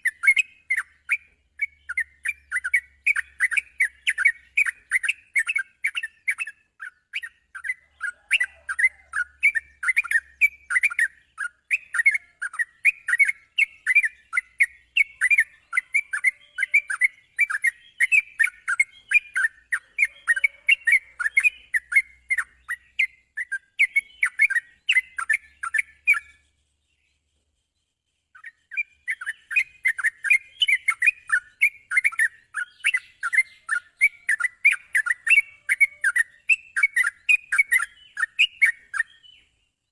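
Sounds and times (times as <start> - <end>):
bulbuls chirping: 0.0 - 27.2.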